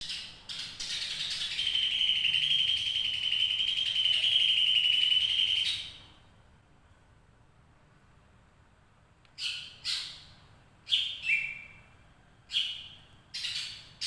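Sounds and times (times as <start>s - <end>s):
bird trilling: 0.0s - 6.1s, 9.4s - 11.9s, 12.5s - 14.0s.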